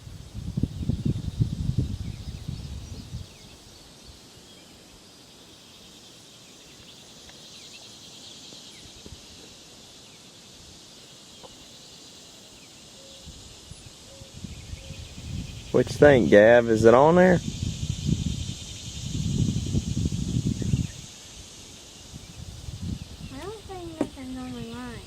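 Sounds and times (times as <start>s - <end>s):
wind rumble on microphone: 0.0s - 4.2s, 13.2s - 25.0s
high insect hiss: 0.0s - 25.0s
bird chirps: 11.0s - 16.4s.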